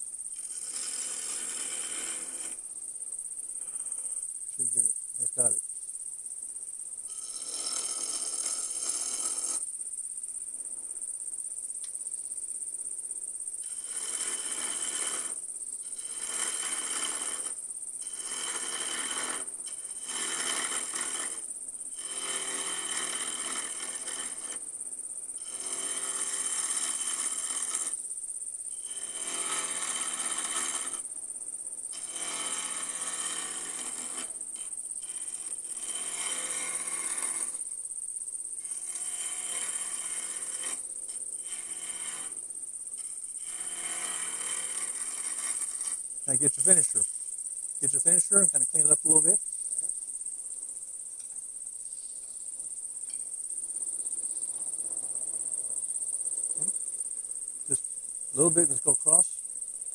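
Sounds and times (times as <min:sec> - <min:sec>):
lathe tool cutting wood: 0:00.4 - 0:02.6, 0:07.1 - 0:09.6, 0:13.6 - 0:24.6, 0:25.4 - 0:28.0, 0:28.8 - 0:31.1, 0:31.9 - 0:37.6, 0:38.6 - 0:42.4, 0:43.0 - 0:47.0
high-pitched lathe whine: 0:07.1 - 0:09.7, 0:13.6 - 0:24.6, 0:25.4 - 0:28.0, 0:28.7 - 0:31.1, 0:31.9 - 0:37.6, 0:38.6 - 0:42.4, 0:43.0 - 0:47.1.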